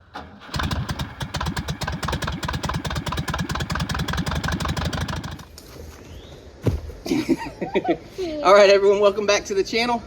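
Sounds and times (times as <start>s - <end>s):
air-cooled car engine running: 0.1s - 5.5s.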